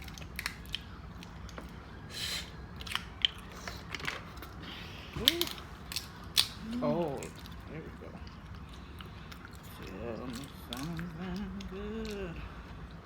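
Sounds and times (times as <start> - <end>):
crab shells cracking: 0.0 - 1.6, 5.2 - 6.6.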